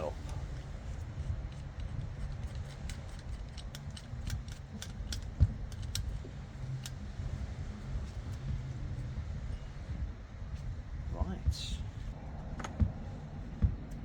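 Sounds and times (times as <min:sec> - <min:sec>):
steady low rumble: 0:00.0 - 0:14.0
small metallic clicks and taps: 0:01.5 - 0:07.0.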